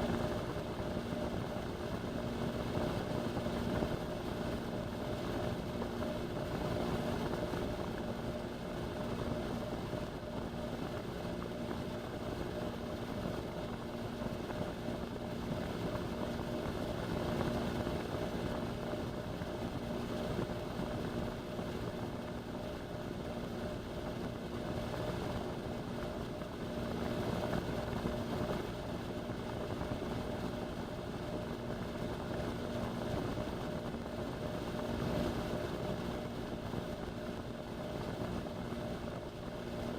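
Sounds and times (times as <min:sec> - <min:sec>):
washing machine spinning: 0:00.0 - 0:39.9.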